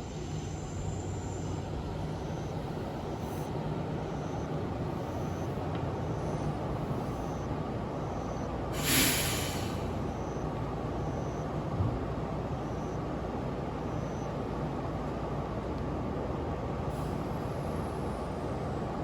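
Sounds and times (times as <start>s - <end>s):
train rumbling past: 8.7s - 10.6s
short sharp hiss: 8.8s - 9.9s.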